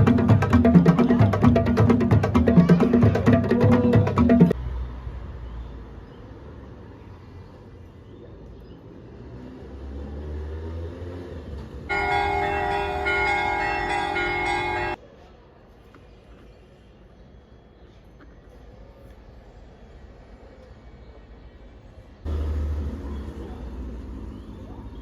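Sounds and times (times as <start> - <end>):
loud horn chord: 11.9 - 15.0.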